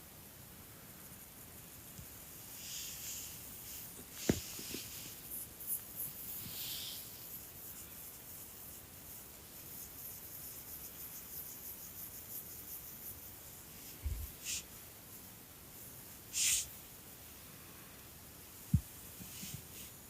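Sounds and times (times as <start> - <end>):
faint scratchy rustling: 1.8 - 9.1, 18.6 - 20.0.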